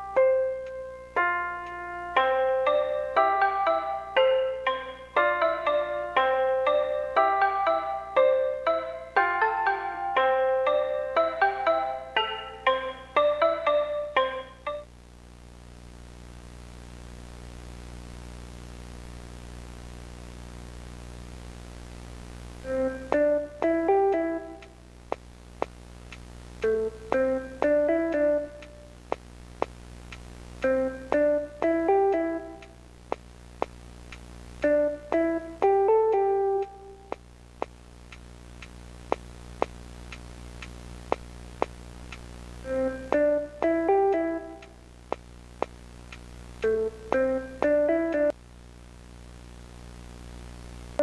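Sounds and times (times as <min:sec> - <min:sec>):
low electrical hum: 0:00.0 - 0:51.0
static hiss: 0:00.0 - 0:51.0
steady ticking: 0:23.1 - 0:42.3.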